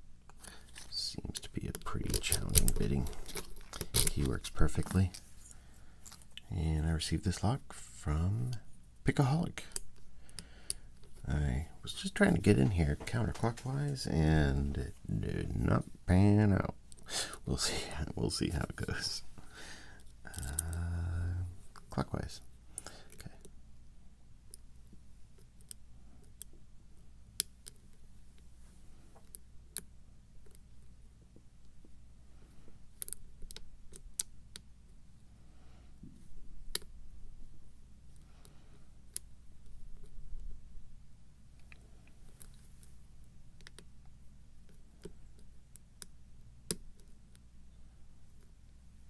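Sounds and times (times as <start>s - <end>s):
faint low hum: 0.0s - 49.0s.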